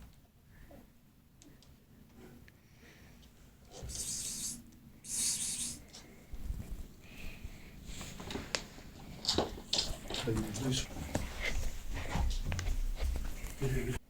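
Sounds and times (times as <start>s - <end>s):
cat hissing: 3.7s - 6.0s.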